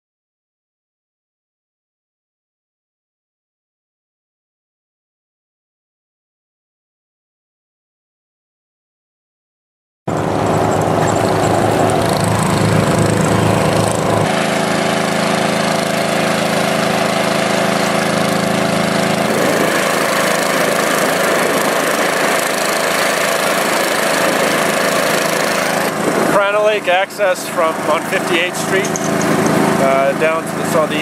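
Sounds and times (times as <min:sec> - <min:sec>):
engines running: 0:10.1 - 0:31.0.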